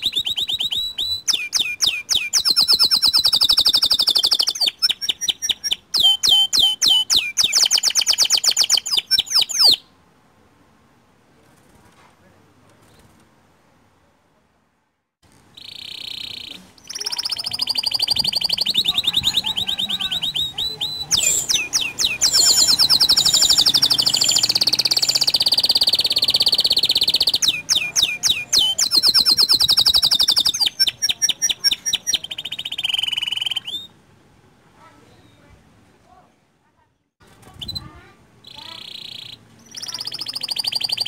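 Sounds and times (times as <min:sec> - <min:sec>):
canary singing trills: 0:00.0 - 0:09.9, 0:15.4 - 0:34.0, 0:37.5 - 0:41.0.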